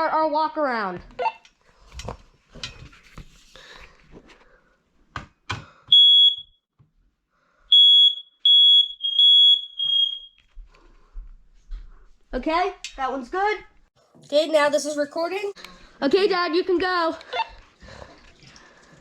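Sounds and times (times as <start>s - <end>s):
smoke alarm beeping: 5.9s - 6.6s, 7.7s - 10.5s.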